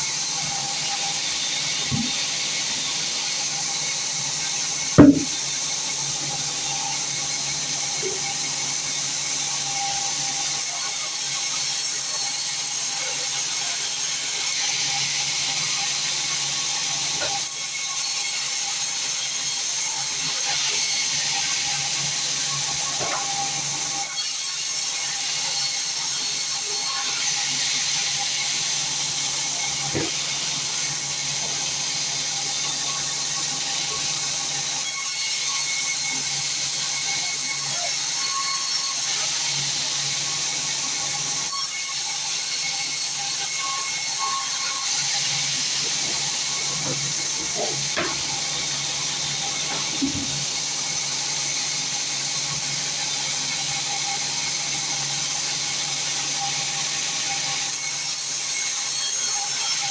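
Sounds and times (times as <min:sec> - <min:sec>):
sawmill machinery hissing: 0:00.0 - 0:05.6, 0:06.2 - 0:59.8
short knock: 0:01.9 - 0:02.2, 0:05.0 - 0:05.4, 0:30.0 - 0:30.2, 0:46.6 - 0:48.3
sawmill hiss and hum: 0:42.2 - 0:57.2.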